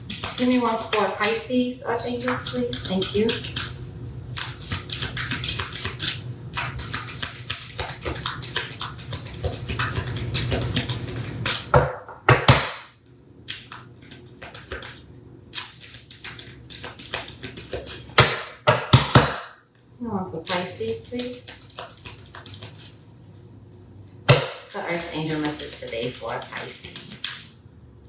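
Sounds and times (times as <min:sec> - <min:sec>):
cards being shuffled: 0:00.0 - 0:01.4, 0:02.2 - 0:11.7, 0:13.4 - 0:18.4, 0:20.4 - 0:23.0, 0:24.6 - 0:27.6.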